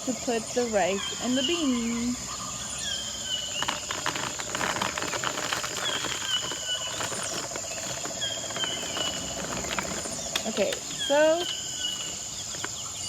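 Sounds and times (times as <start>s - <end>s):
insect trilling: 0.1s - 13.0s
rice and beans pouring: 3.5s - 13.0s
paper shaker crackling: 3.6s - 13.0s.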